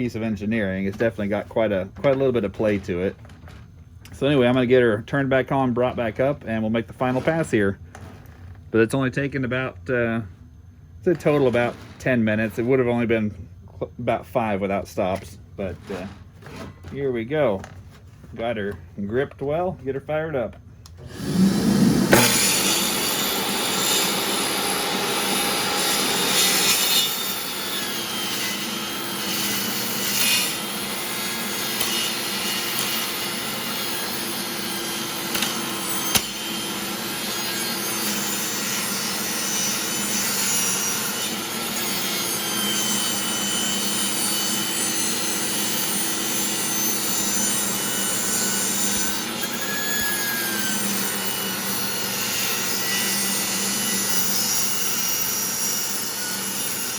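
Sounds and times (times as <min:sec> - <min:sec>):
table saw cutting wood: 0:21.0 - 0:56.9.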